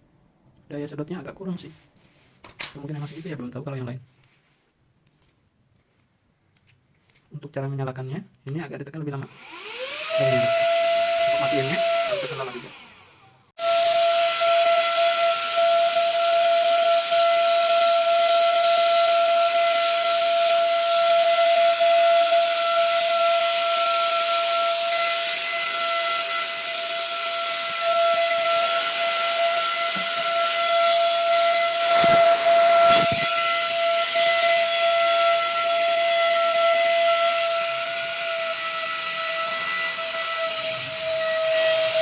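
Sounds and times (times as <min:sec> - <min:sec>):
vacuum cleaner motor whine: 0:09.3 - 0:34.9, 0:36.4 - 0:42.0.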